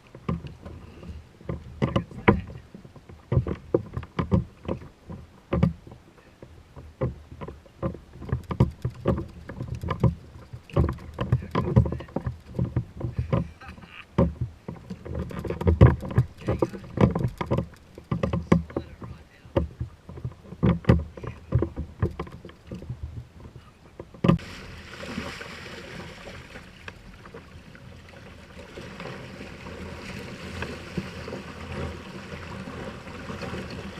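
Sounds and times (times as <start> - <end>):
knocks and thumps on a kayak: 0.0 - 33.9
wind: 0.0 - 33.9
water rushing: 8.6 - 20.4, 23.4 - 33.9.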